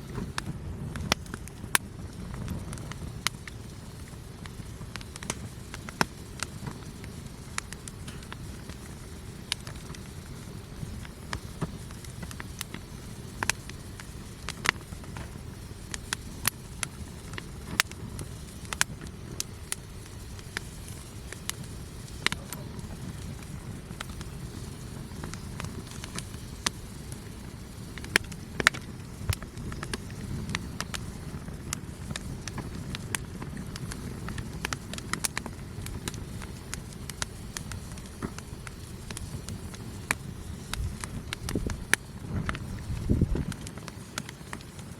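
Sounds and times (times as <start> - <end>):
campfire crackling and popping: 0.0 - 44.9.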